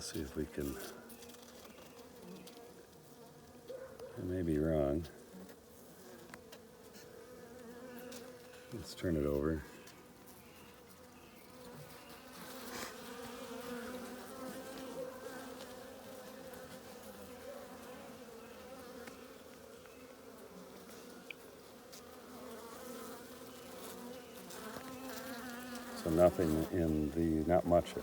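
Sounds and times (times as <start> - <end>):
honeybees buzzing: 0.0 - 28.0
faint clicks of hive frame: 6.2 - 6.7, 18.8 - 20.1, 20.8 - 22.0, 23.7 - 26.0.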